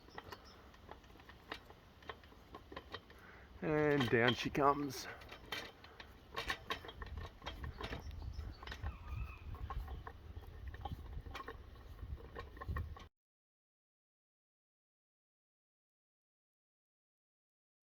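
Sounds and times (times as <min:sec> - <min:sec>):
crank mechanism clicking: 0:00.0 - 0:13.1
wind rumble on microphone: 0:06.8 - 0:13.1.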